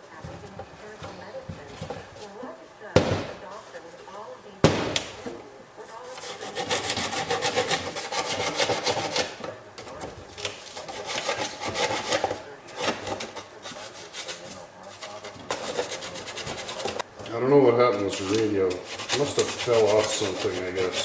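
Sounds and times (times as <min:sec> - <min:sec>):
toothbrush scrubbing: 0:05.9 - 0:17.1, 0:17.9 - 0:21.0.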